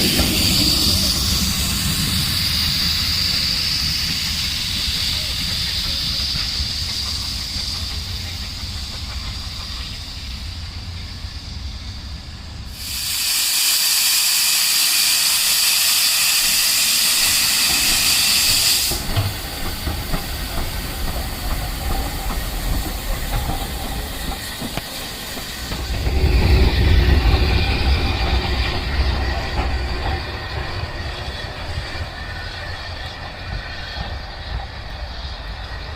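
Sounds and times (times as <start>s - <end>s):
steam hissing: 0.0s - 35.9s
steam locomotive rumble: 0.0s - 35.9s.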